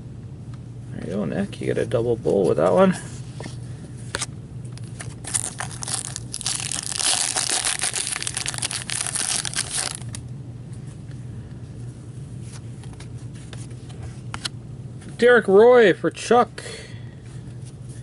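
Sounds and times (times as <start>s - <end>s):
low steady hum: 0.0s - 18.0s
card pack wrapper tearing: 4.9s - 10.2s.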